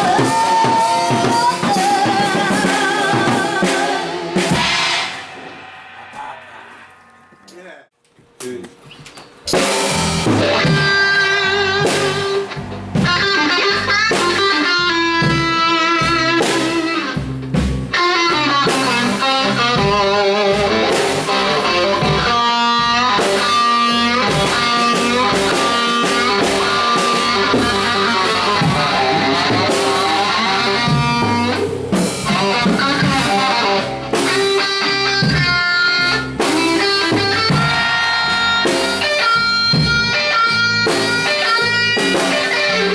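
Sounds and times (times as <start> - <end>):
bass: 0.0 - 7.8, 8.4 - 42.9
drum kit: 0.0 - 42.9
electric guitar lead bending notes: 9.5 - 42.9.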